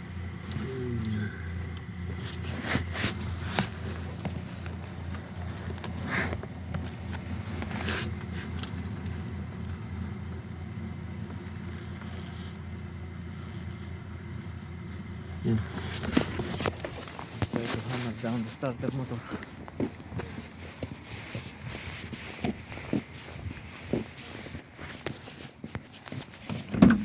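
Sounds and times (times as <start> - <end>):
vehicle engine idling: 0.0 - 27.0.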